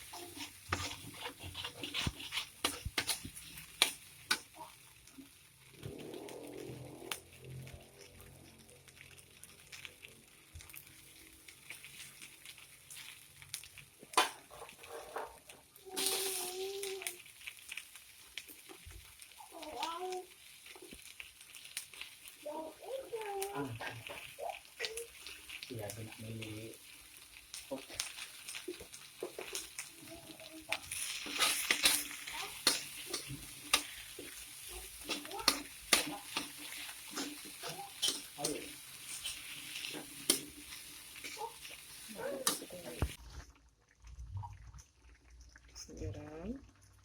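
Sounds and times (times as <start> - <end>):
spatula scraping a pan: 0.0 - 4.8, 14.2 - 16.5, 26.7 - 43.2
food frying in hot oil: 0.0 - 47.0
steady hissing: 22.0 - 43.2.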